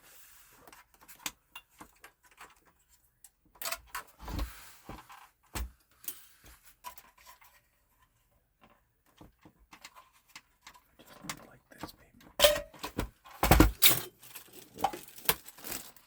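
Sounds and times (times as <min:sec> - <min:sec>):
console parts clicking and knocking: 0:09.1 - 0:14.0.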